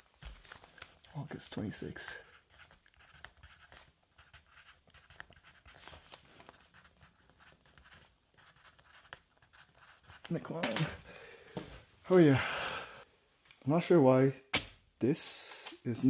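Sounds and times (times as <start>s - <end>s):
pen scratching on paper: 2.0s - 10.8s.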